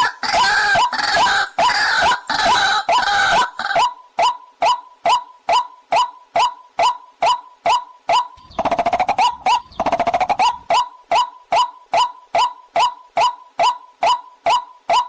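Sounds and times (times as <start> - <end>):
waterhen call: 0.0 - 15.0
rapid rattling bird call: 7.2 - 13.3.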